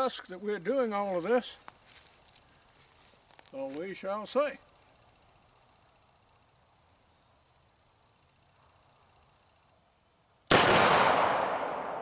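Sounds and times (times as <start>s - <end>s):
faint high-pitched chirps: 1.8s - 10.5s.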